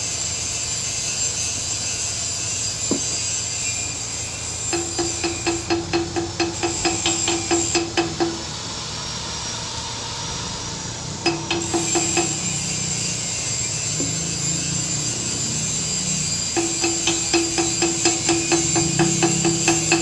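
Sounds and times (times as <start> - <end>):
hammer striking steel: 2.9 - 3.3, 4.7 - 8.5, 11.2 - 13.1, 16.5 - 20.0.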